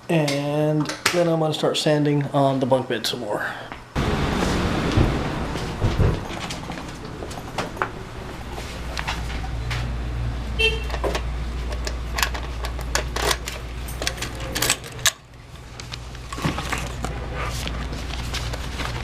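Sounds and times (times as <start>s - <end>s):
car engine humming: 4.0s - 14.6s.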